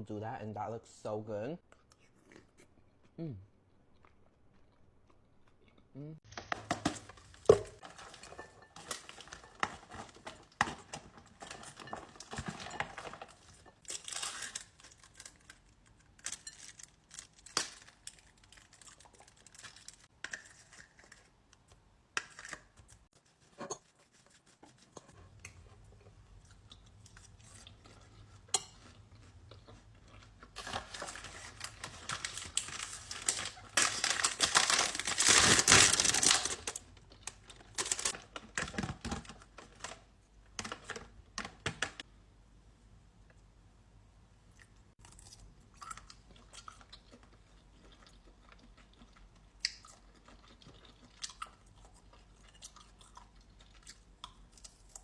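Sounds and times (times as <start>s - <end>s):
packaging crinkling and tearing: 8.8s - 21.3s, 30.4s - 40.0s.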